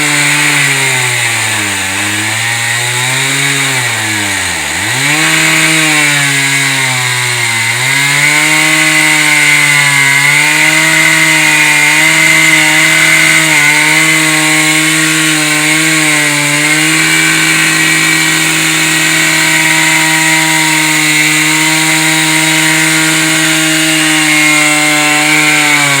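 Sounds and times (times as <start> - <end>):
chainsaw cutting into stone: 0.0 - 26.0.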